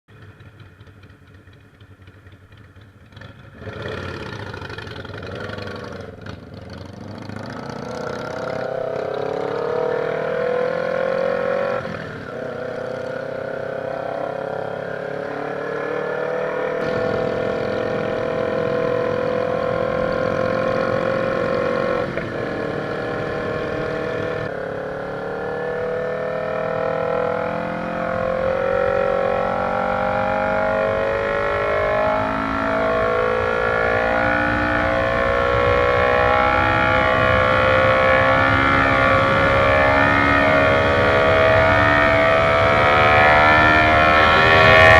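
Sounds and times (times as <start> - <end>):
motorcycle engine accelerating: 0.1 - 44.9
wind rushing: 16.8 - 24.5.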